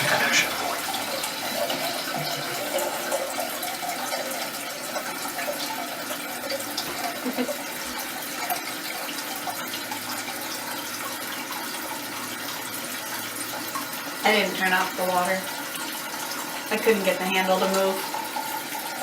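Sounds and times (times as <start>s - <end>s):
water running into toilet tank: 0.0s - 19.0s.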